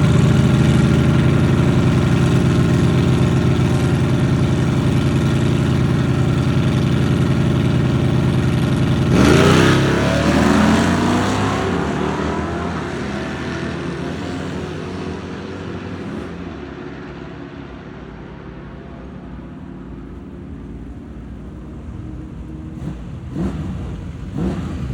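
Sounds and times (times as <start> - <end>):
car engine idling: 0.0 - 14.1, 18.3 - 24.9
car engine revving while accelerating: 6.7 - 17.0, 22.7 - 24.9.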